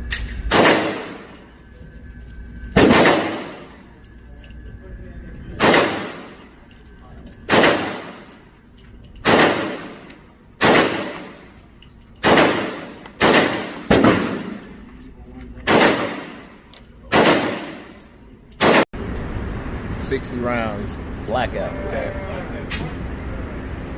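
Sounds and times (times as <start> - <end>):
gunshots with echo: 0.5 - 1.4, 2.8 - 3.8, 5.6 - 6.5, 7.5 - 8.3, 9.2 - 11.5, 12.2 - 14.8, 15.6 - 18.0, 18.6 - 18.9.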